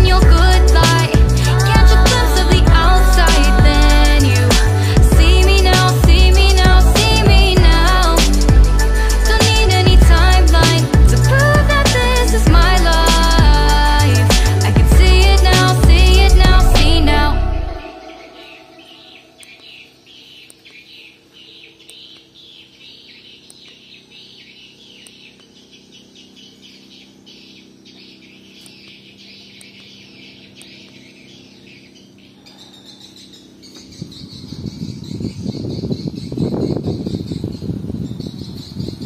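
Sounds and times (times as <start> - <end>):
song: 0.0 - 19.3
steady high bird call: 0.0 - 39.0
small birds chirping: 17.8 - 39.0.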